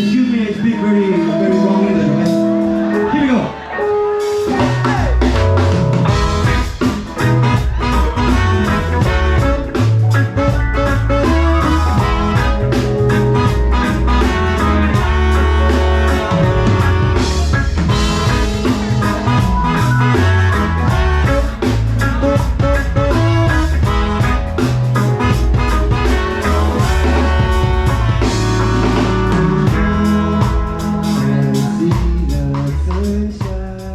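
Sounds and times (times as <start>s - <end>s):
horn section playing: 0.0s - 32.0s
bass: 0.0s - 33.9s
guitar: 0.0s - 33.9s
drum kit: 1.4s - 33.9s.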